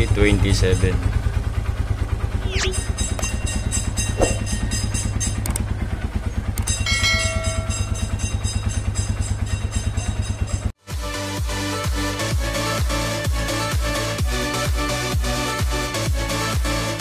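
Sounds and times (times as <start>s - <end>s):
motorcycle engine idling: 0.0s - 10.8s.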